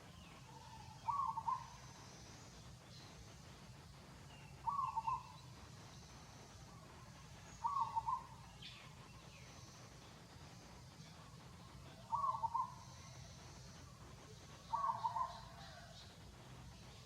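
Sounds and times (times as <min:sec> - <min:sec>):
low background hum: 0:00.0 - 0:17.0
bird hooting call: 0:00.5 - 0:02.2, 0:04.6 - 0:05.4, 0:07.5 - 0:08.8, 0:11.9 - 0:13.4, 0:14.6 - 0:15.9.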